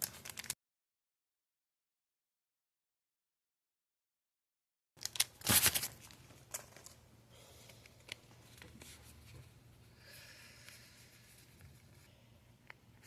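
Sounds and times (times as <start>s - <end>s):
foil wrapper crackling and tearing: 0.0s - 0.6s, 5.0s - 6.2s
trading cards rustling: 0.0s - 0.6s, 5.0s - 7.0s.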